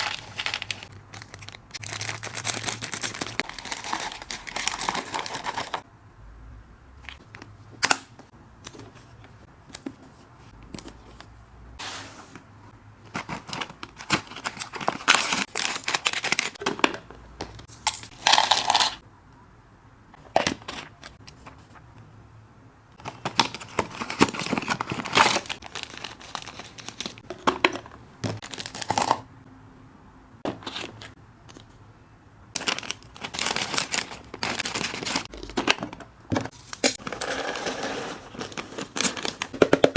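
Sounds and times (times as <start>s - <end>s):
dry snacks rattling: 0.0s - 5.8s, 17.9s - 19.0s, 32.6s - 35.6s
plastic packaging crinkling and tearing: 0.0s - 5.8s, 13.1s - 16.6s, 23.0s - 27.3s, 28.4s - 29.2s, 32.6s - 35.8s, 36.5s - 39.6s.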